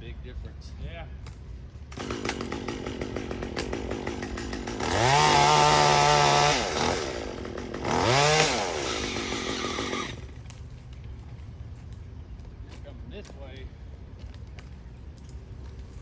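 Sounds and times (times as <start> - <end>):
chainsaw idling and revving: 2.0 - 10.5.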